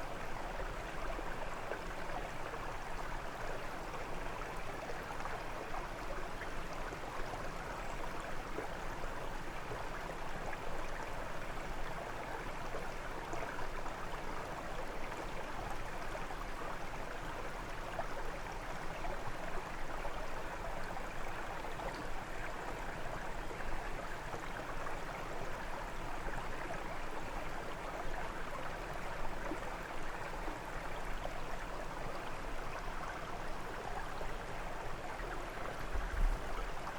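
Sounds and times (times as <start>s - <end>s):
brook babbling over stones: 0.0s - 36.9s.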